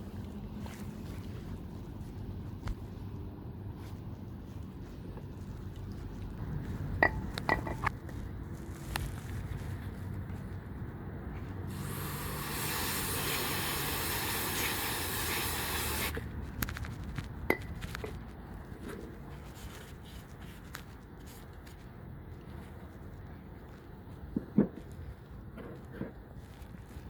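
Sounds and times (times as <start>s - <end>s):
aerosol spray hiss: 11.7s - 16.2s.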